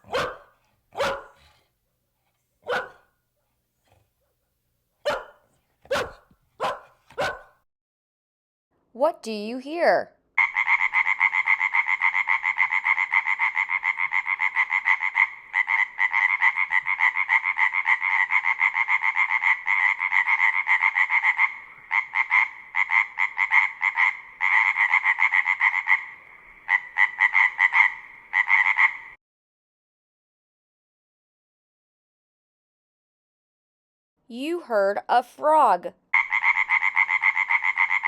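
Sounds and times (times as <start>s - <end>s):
frog croaking: 10.4s - 29.2s, 36.1s - 38.0s.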